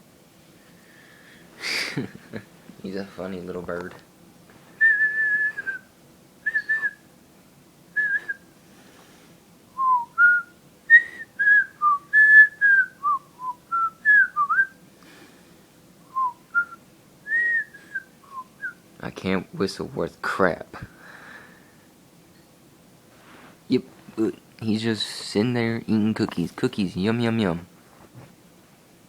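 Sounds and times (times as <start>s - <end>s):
man talking: 2.8s - 4.0s, 19.0s - 20.9s, 23.7s - 27.7s
man whistling a tune: 4.8s - 7.0s, 8.0s - 8.4s, 9.8s - 14.8s, 16.1s - 18.8s.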